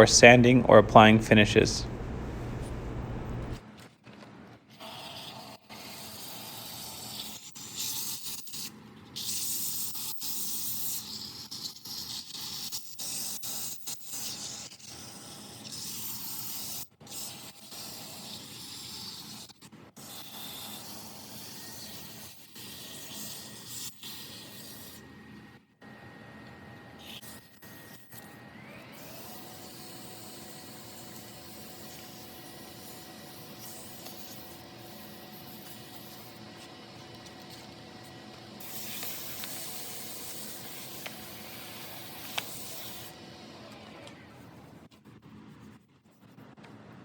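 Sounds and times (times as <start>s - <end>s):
sandpaper hissing on spinning wood: 4.9s - 25.0s, 29.0s - 43.6s.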